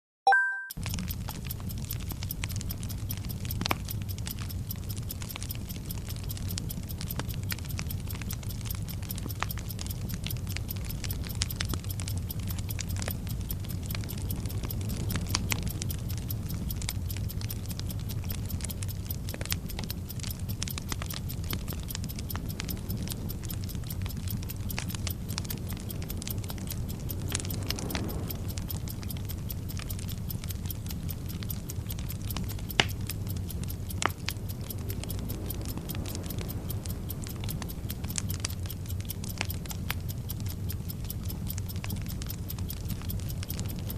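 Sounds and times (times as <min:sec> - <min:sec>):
clock ticking fast: 0:00.4 - 0:43.9
fuse crackling and sputtering: 0:00.8 - 0:43.9
low rumble: 0:10.8 - 0:43.9.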